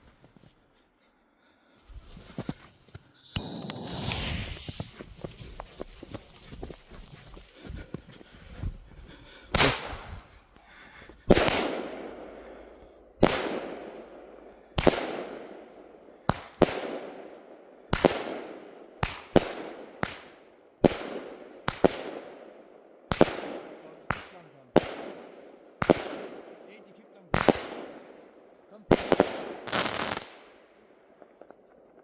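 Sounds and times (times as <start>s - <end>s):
firework bangs: 3.2s - 6.0s, 11.3s - 12.4s, 13.2s - 14.1s, 27.3s - 28.3s, 28.9s - 30.5s.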